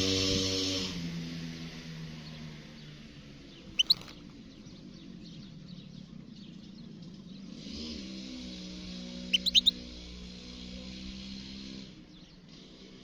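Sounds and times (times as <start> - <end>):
goldfinch chirps and twittering: 3.8 - 4.2, 9.3 - 9.7.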